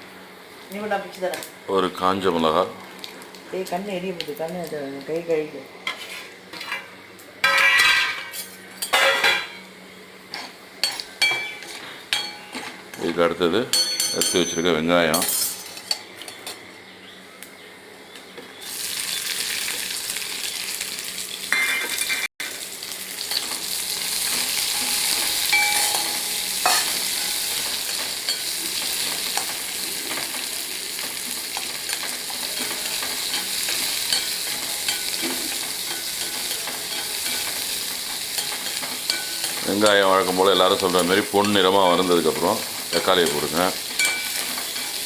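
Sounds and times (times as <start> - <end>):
onions sizzling in oil: 0.0 - 13.7, 18.5 - 45.0
stirring and scraping: 5.8 - 6.9, 10.3 - 13.8.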